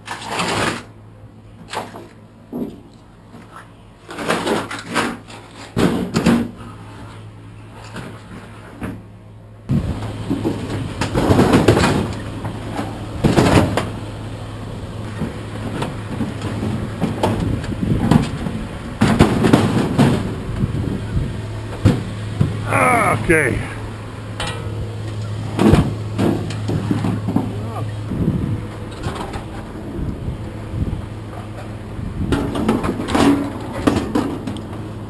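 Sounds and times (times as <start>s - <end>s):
engine hum: 0.0s - 35.0s
metal clanking and scraping: 1.6s - 9.0s, 10.0s - 14.0s, 15.0s - 22.6s, 24.2s - 30.1s, 32.3s - 34.8s.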